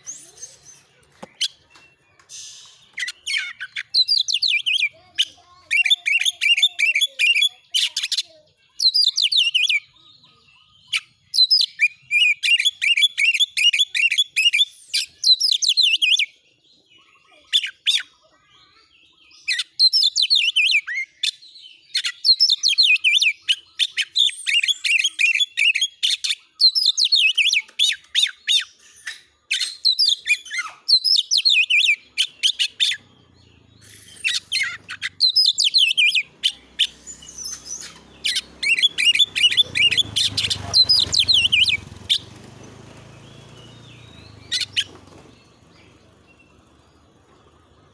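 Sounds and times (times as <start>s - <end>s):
magpie-robin singing rapid notes: 0.0s - 10.0s, 10.6s - 16.3s, 29.6s - 47.8s.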